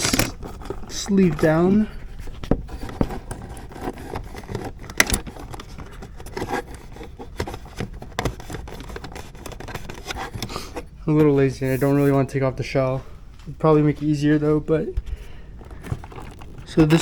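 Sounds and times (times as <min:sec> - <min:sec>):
plastic connector clicks and scrapes: 0:00.0 - 0:10.9, 0:15.8 - 0:17.0.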